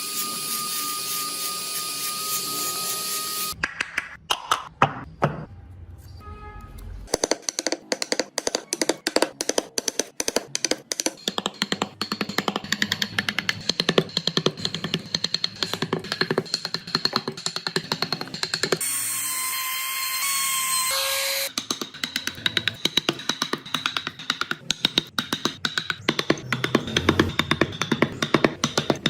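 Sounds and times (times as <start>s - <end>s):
music with clicking beat: 7.2s - 18.8s, 21.5s - 29.0s.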